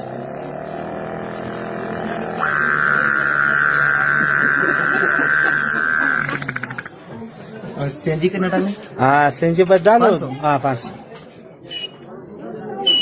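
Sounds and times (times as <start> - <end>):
boy imitating a generator: 0.0 - 6.9.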